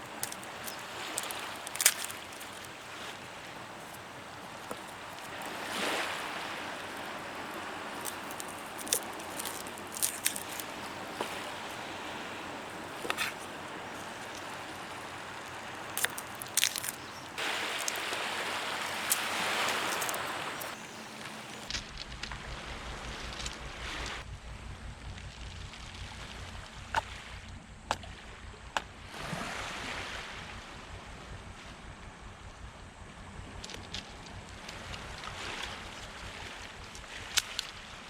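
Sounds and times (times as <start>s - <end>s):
small waves washing on beach: 0.0s - 24.2s, 29.1s - 30.9s, 33.7s - 38.0s.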